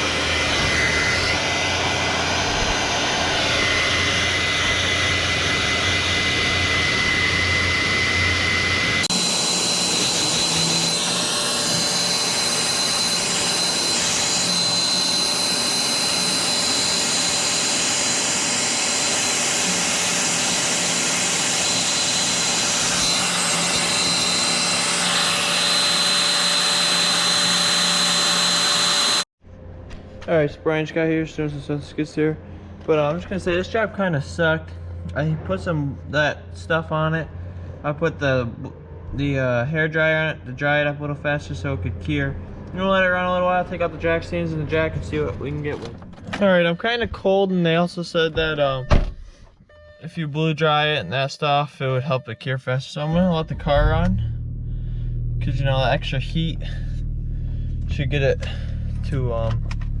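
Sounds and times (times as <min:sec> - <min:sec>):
hair dryer blowing with whine: 0:00.0 - 0:29.3.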